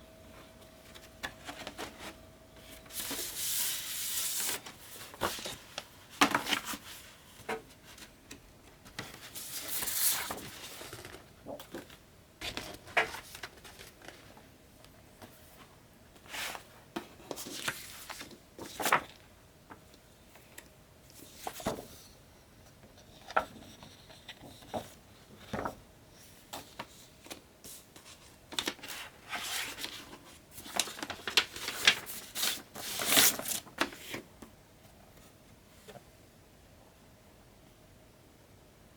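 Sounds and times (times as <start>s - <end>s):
packaging rustling and crinkling: 28.6s - 34.2s.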